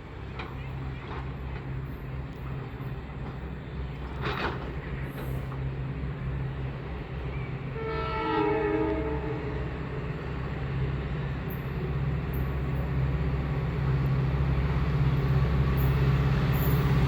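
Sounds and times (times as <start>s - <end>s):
diesel locomotive engine humming: 0.0s - 17.0s
locomotive horn chord: 7.7s - 9.8s.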